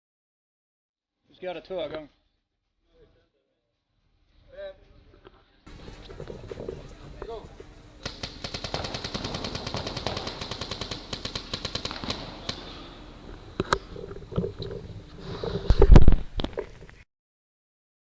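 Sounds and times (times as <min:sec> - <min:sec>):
paintball marker firing: 0:05.7 - 0:17.0.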